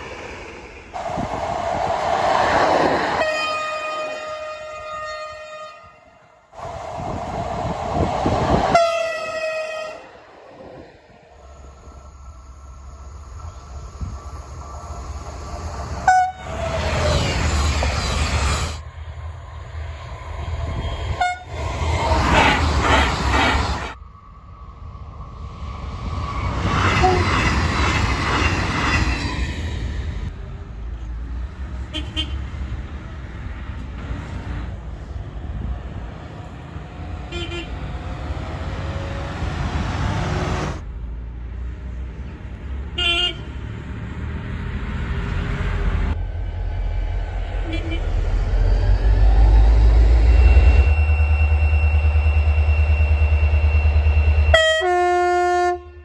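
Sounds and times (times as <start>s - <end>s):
train rushing past: 0.0s - 42.9s, 43.6s - 56.0s
train horn: 3.2s - 6.4s, 8.7s - 10.1s, 16.0s - 16.5s, 21.2s - 21.5s, 27.0s - 27.4s, 37.3s - 37.9s, 47.5s - 48.3s, 54.4s - 56.0s
train horn short beeps: 54.4s - 56.0s.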